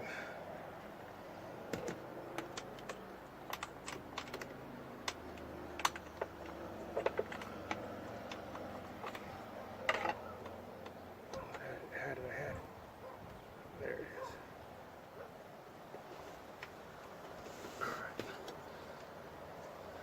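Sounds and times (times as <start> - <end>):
wiring harness clicking against plastic: 1.6 - 11.7.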